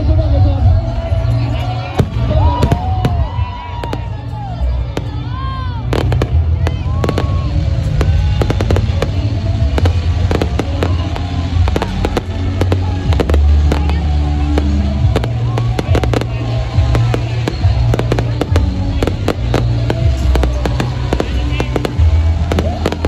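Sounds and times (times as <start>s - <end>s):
music with steady bass: 0.0s - 23.0s
fireworks bangs and crackles: 0.2s - 23.0s.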